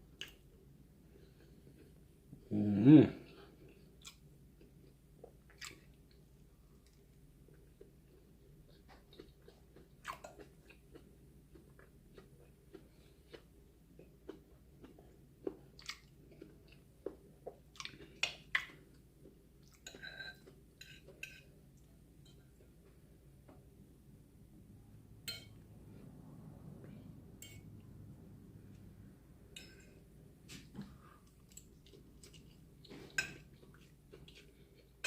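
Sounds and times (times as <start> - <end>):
person chewing food: 3.4 - 23.1, 30.9 - 35.0.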